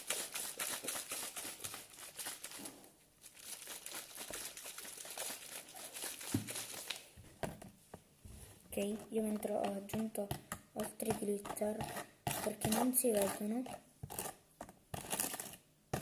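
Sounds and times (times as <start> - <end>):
container of slime being shaken: 0.0 - 7.2, 10.8 - 14.3.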